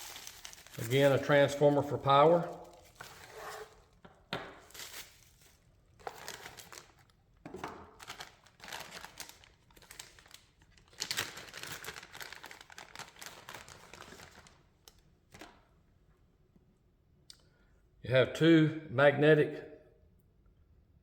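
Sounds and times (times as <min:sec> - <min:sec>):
packaging crinkling: 0:00.0 - 0:04.0, 0:04.6 - 0:07.2, 0:07.9 - 0:15.5.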